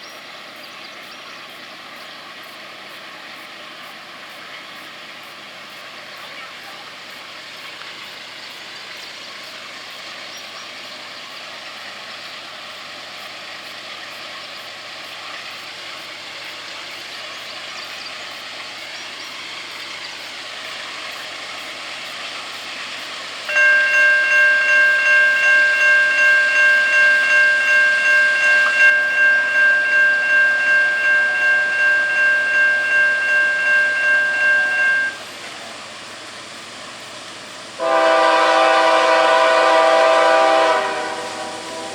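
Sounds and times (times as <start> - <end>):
freight train rumble: 0.0 - 41.9
locomotive air horn chord: 23.5 - 35.4, 37.8 - 41.9.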